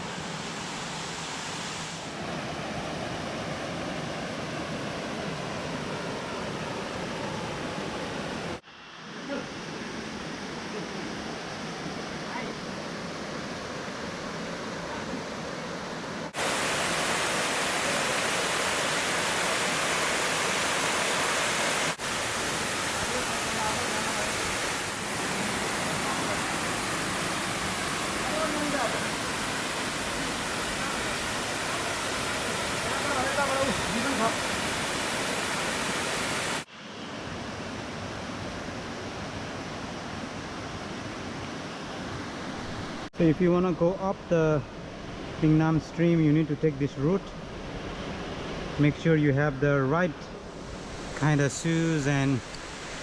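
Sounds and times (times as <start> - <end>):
stream and waterfall rushing: 0.0 - 53.0
stream water rushing over rocks: 11.1 - 37.4.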